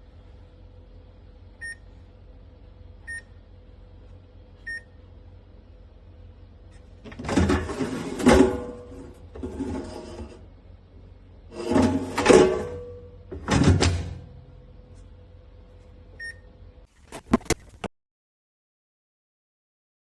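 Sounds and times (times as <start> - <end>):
drawer scraping and clattering: 17.0 - 17.9.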